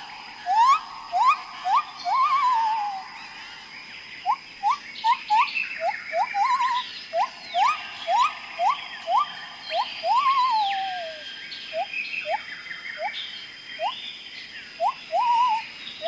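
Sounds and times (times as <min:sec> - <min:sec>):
rising chirps: 0:00.0 - 0:03.4, 0:04.2 - 0:11.2
faint high chirps: 0:00.0 - 0:14.0, 0:14.8 - 0:16.0.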